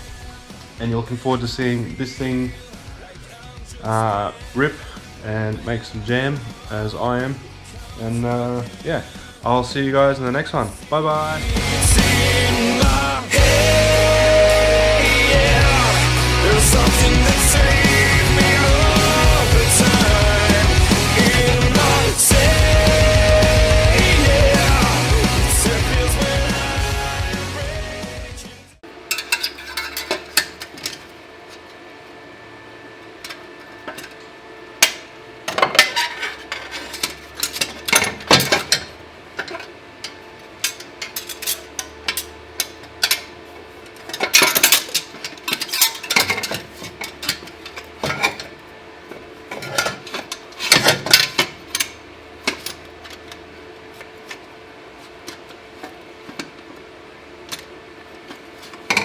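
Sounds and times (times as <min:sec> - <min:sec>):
hand tools knocking on metal: 0:29.1 - 0:31.1.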